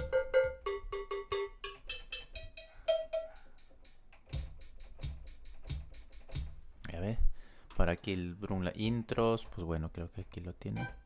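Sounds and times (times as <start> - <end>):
drum beat with bass drum: 0.0 - 6.7.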